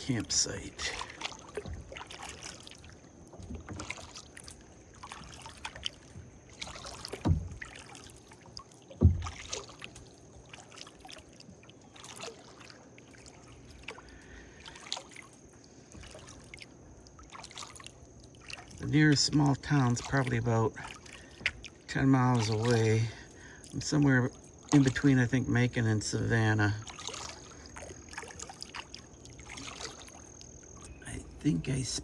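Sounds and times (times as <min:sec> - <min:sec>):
paddle strokes swishing in water: 0:00.0 - 0:32.0
paddle knocking against hull: 0:00.9 - 0:11.1, 0:20.0 - 0:22.8.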